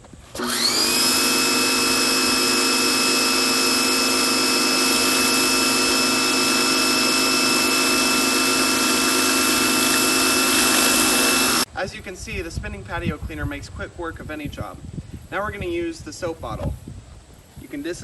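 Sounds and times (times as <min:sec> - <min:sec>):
pressure washer motor and pump: 0:00.3 - 0:11.7
water spraying: 0:00.6 - 0:11.7.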